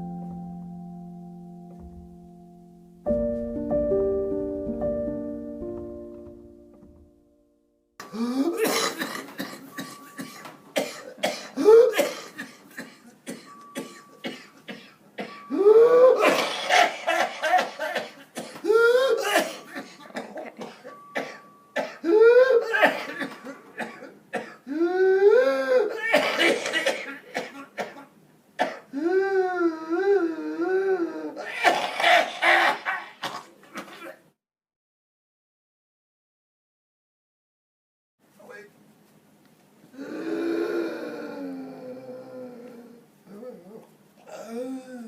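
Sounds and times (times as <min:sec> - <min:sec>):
rapid short coughs: 0:08.6 - 0:15.4, 0:26.0 - 0:28.9, 0:31.6 - 0:34.2
high-pitched whooping in-breath: 0:15.5 - 0:17.1.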